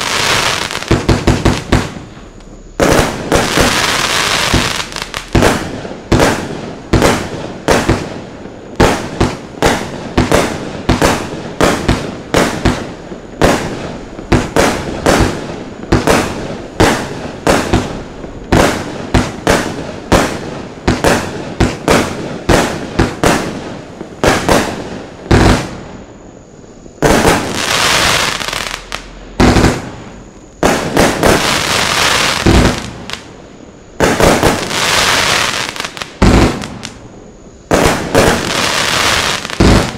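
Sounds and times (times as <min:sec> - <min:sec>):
firework battery firing shots: 0:00.0 - 0:26.0, 0:27.0 - 0:33.3, 0:33.9 - 0:37.0, 0:37.7 - 0:39.9.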